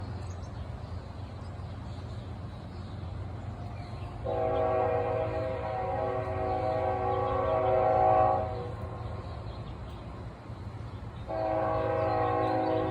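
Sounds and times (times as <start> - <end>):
train horn blowing: 4.2 - 9.2, 11.2 - 12.9.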